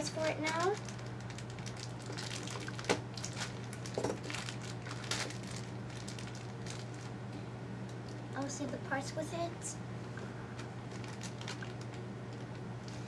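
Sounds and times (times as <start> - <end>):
plastic packaging crinkling: 0.0 - 7.3, 10.5 - 13.0.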